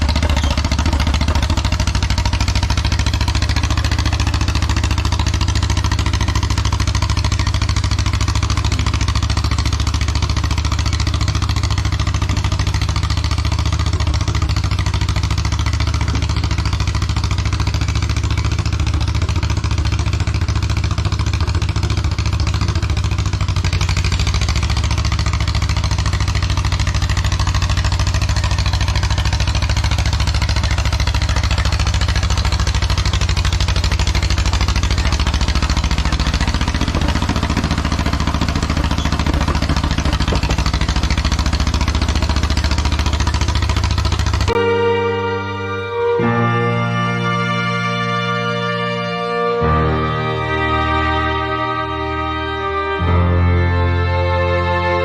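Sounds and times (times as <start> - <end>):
two-cylinder engine running: 0.0 - 55.0.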